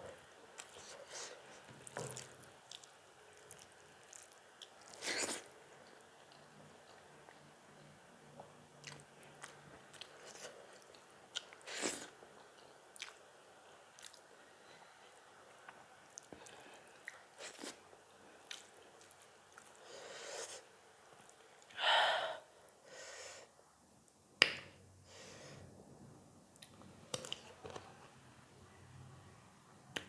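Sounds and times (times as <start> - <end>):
chewing and mouth sounds: 1.8 - 7.5, 8.4 - 13.2, 13.9 - 14.3, 18.4 - 19.8.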